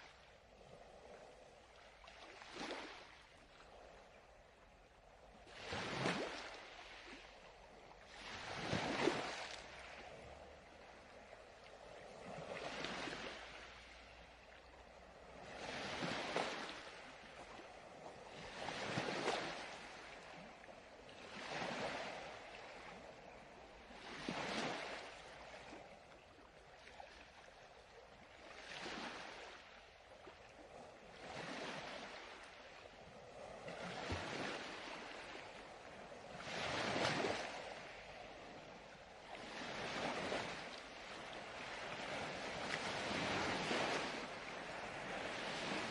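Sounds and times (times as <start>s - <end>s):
ocean waves washing in: 28.3s - 45.9s.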